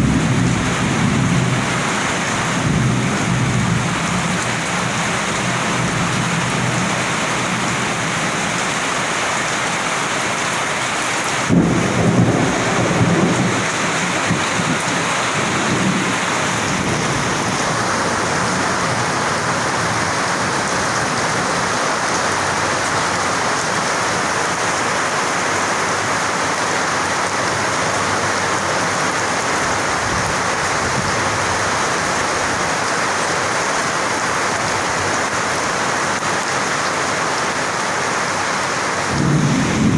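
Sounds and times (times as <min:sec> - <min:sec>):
thunder clap rumbling: 0:00.0 - 0:08.8, 0:11.3 - 0:23.3, 0:39.0 - 0:39.9
heavy rain falling: 0:00.0 - 0:39.9.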